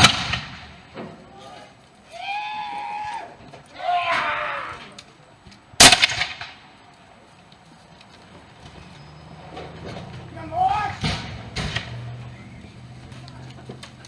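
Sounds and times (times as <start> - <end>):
black powder gunshot with echo: 0.0 - 1.0, 5.8 - 6.7, 10.8 - 12.6
drawn-out shouted calls: 0.0 - 14.0.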